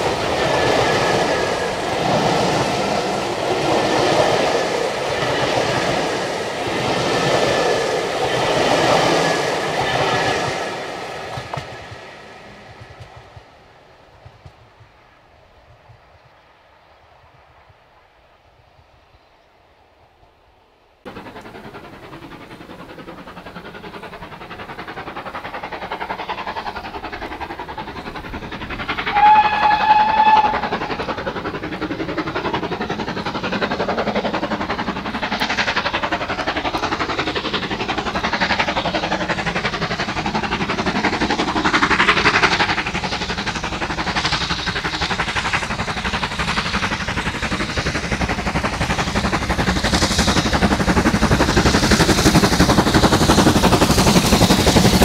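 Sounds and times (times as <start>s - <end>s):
steam locomotive running: 0.0s - 16.4s, 21.0s - 55.0s
steam whistle blast: 29.1s - 31.0s.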